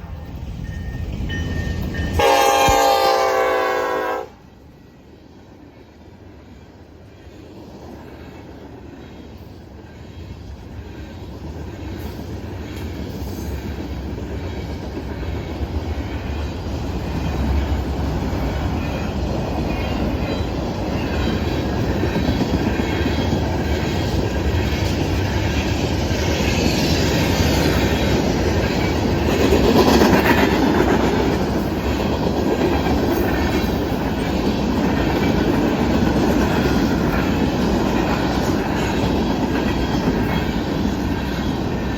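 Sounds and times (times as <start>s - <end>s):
freight train passing: 0.0s - 41.9s.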